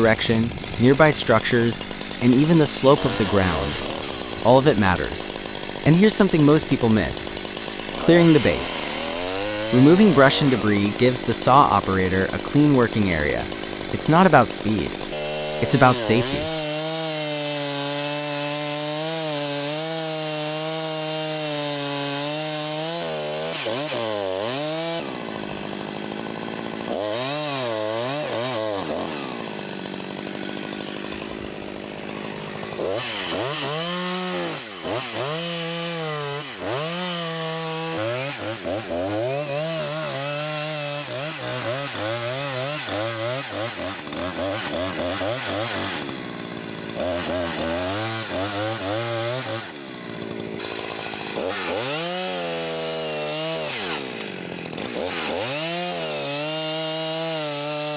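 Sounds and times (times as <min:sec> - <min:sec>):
chainsaw revving: 0:00.0 - 0:57.9.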